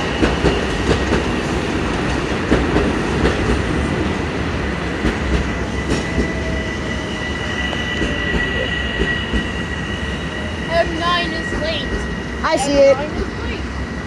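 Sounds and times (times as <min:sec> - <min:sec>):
train rumbling on rails: 0:00.0 - 0:14.0.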